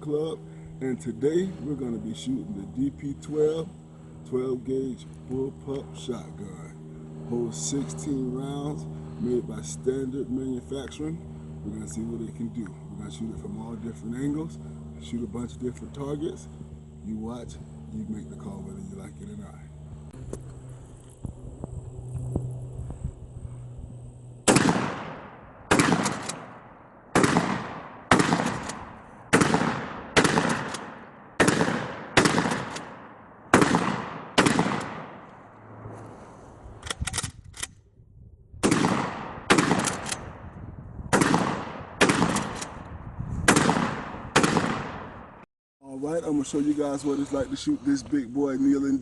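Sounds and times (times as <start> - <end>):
shotgun shots echoing: 24.4 - 35.3, 38.6 - 40.4, 41.1 - 45.4.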